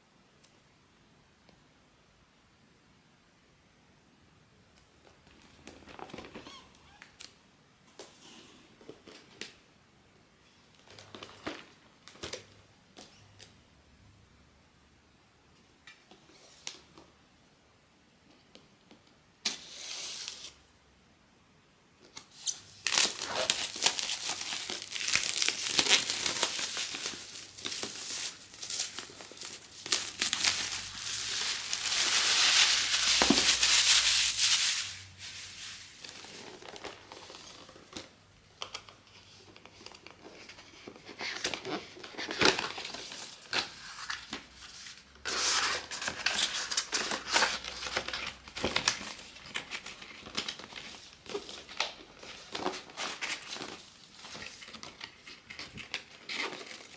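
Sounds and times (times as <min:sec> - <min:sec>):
packaging crinkling and tearing: 0:22.3 - 0:38.9, 0:39.5 - 0:56.9.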